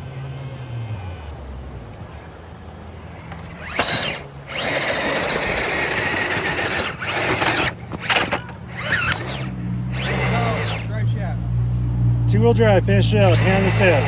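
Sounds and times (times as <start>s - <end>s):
toy car motor whirring: 0.0s - 1.4s, 2.1s - 2.4s, 3.2s - 11.0s, 13.2s - 14.0s.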